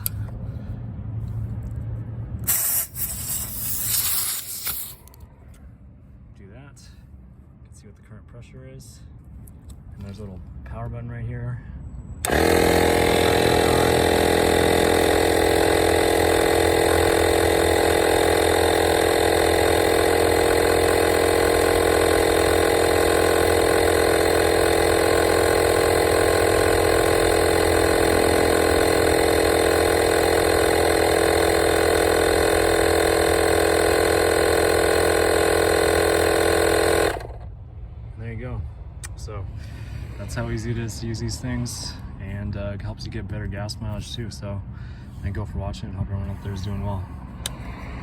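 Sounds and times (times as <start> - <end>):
tire inflator compressor buzzing: 0.0 - 0.7, 2.4 - 5.2, 12.2 - 37.6, 46.4 - 48.0.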